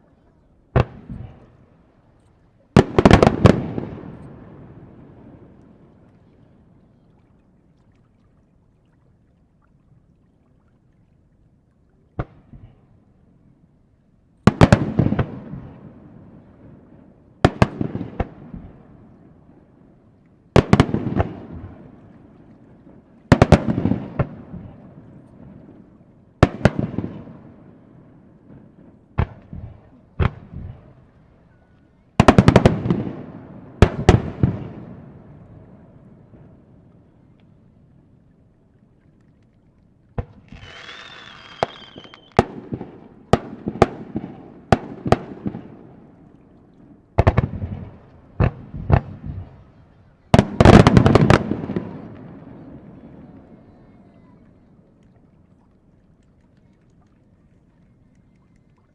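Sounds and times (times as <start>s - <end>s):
fireworks bang: 40.2s - 44.0s
fireworks cracks: 40.2s - 44.0s.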